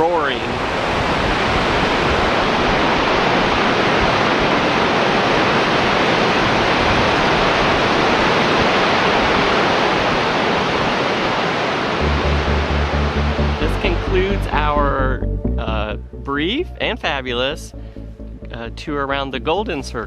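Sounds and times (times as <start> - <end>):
waterfall roaring: 0.0 - 14.4.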